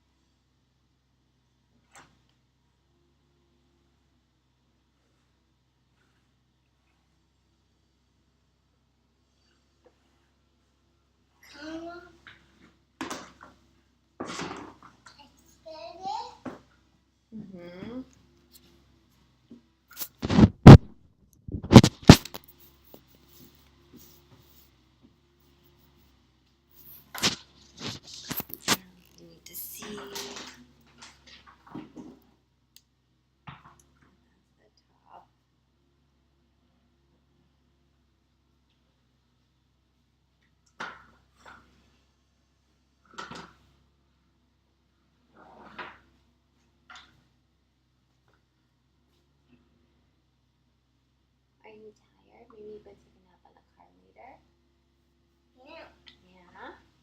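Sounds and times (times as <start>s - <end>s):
hard objects knocking and clunking: 19.5s - 22.6s
loud knocks and scrapes: 20.0s - 20.9s, 21.5s - 24.6s.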